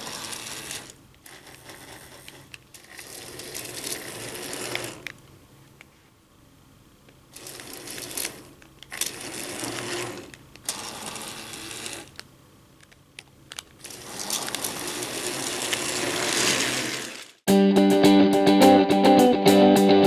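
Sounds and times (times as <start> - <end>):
toy train motor whirring: 0.0 - 5.2, 7.3 - 12.2, 13.5 - 17.4.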